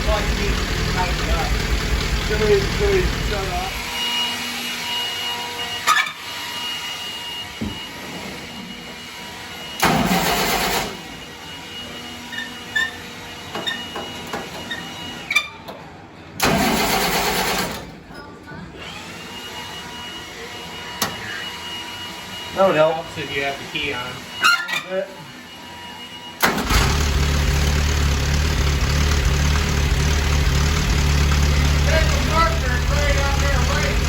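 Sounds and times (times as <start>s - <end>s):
engine cranked by starter motor: 0.0s - 3.9s, 9.8s - 11.0s, 16.4s - 17.9s, 26.4s - 34.0s.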